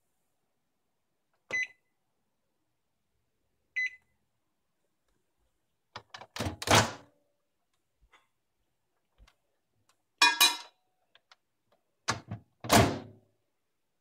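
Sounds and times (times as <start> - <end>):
microwave keypad beeping: 3.8 - 4.0.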